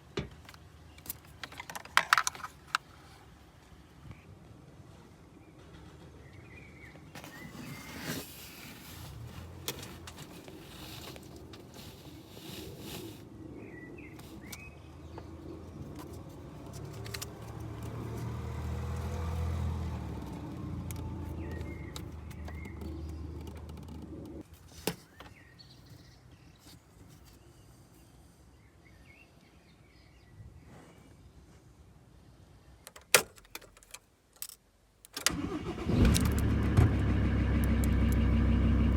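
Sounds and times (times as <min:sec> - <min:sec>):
birds chirping: 0:05.3 - 0:09.0, 0:09.7 - 0:17.9, 0:20.2 - 0:24.4
van engine low drone: 0:14.4 - 0:24.4, 0:35.6 - 0:38.9.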